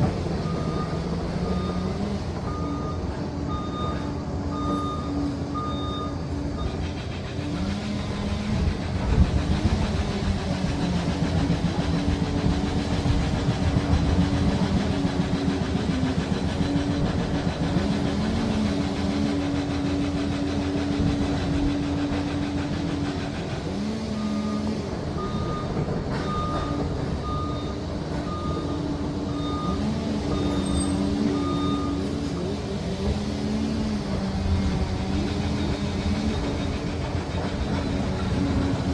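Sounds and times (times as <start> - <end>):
bulldozer diesel engine with drive whine: 0.0 - 38.9
reversing alarm beeping: 0.4 - 7.1, 24.1 - 32.5.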